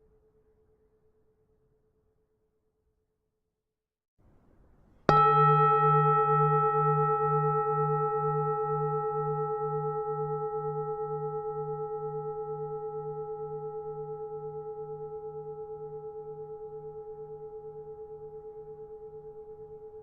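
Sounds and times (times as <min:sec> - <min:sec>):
temple bell ringing: 0:05.1 - 0:12.4.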